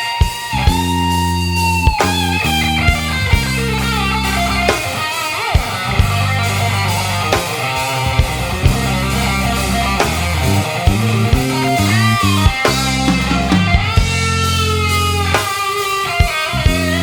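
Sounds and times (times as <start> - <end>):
bass and drums: 0.0 - 17.0
electric guitar lead with bends: 0.0 - 17.0.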